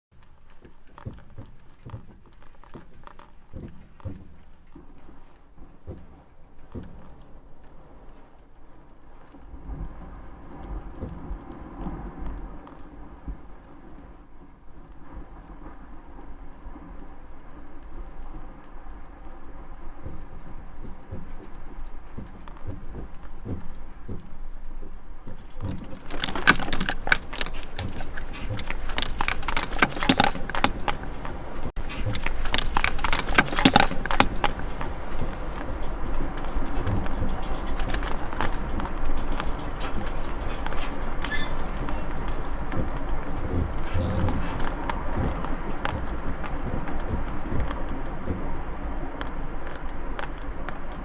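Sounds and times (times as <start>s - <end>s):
low earthquake rumble: 0.1s - 51.0s
objects rattling and clattering: 25.3s - 48.7s.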